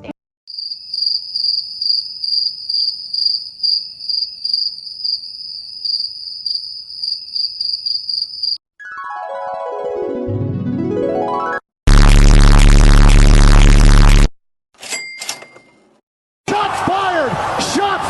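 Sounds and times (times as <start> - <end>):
crickets chirping: 0.5 - 8.6.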